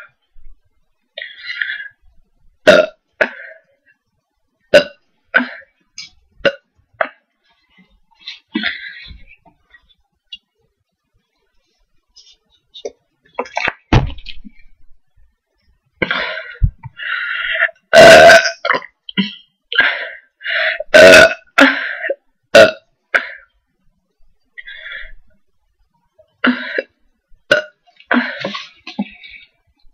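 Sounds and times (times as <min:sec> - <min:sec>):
person burping loudly: 0:02.6 - 0:03.6, 0:04.7 - 0:05.8, 0:06.4 - 0:07.2, 0:17.6 - 0:20.1, 0:20.8 - 0:23.5, 0:26.4 - 0:29.2.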